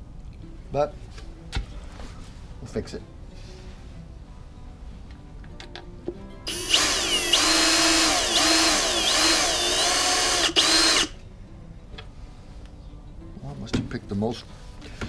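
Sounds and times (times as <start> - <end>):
electric drill boring: 6.5 - 11.2.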